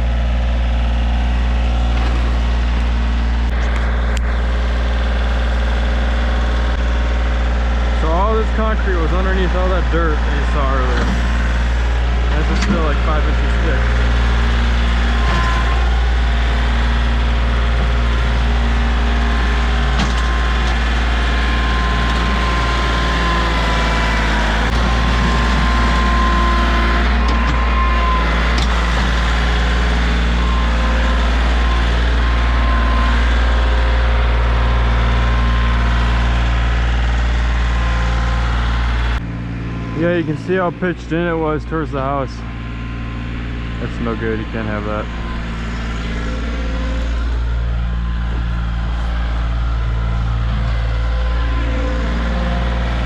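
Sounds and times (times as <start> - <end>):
tractor engine running: 0.0 - 53.0.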